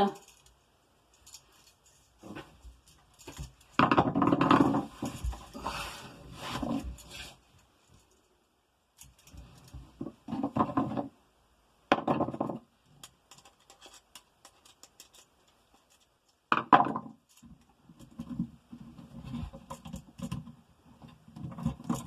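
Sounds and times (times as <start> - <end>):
wires scraping and clicking: 0.0 - 8.4, 9.0 - 11.1, 12.2 - 22.0.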